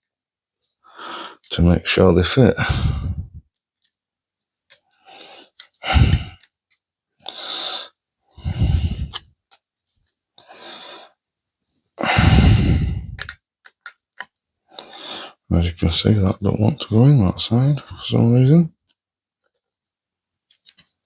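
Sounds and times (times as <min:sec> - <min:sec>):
person breathing: 0:00.8 - 0:01.5, 0:02.6 - 0:03.4, 0:05.0 - 0:06.5, 0:07.2 - 0:09.2, 0:10.4 - 0:11.2, 0:12.0 - 0:13.3, 0:14.7 - 0:15.5.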